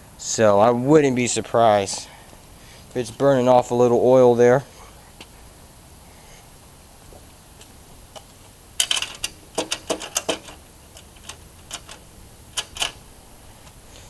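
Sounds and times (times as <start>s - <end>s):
low steady background noise: 0.0s - 14.0s.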